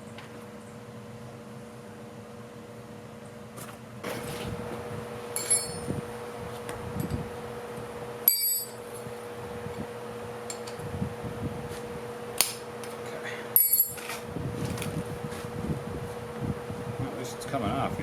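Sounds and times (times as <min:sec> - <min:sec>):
steady hum: 0:00.0 - 0:18.0
metal parts clinking: 0:05.4 - 0:05.9, 0:08.3 - 0:08.8, 0:13.6 - 0:14.1.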